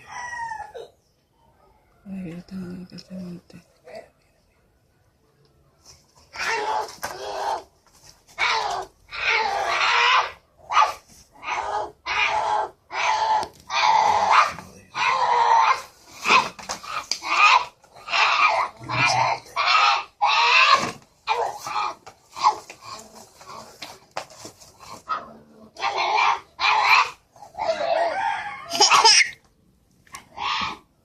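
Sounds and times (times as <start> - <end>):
animal harsh cries: 6.3 - 7.7, 8.4 - 23.0, 25.0 - 29.4, 30.3 - 30.9.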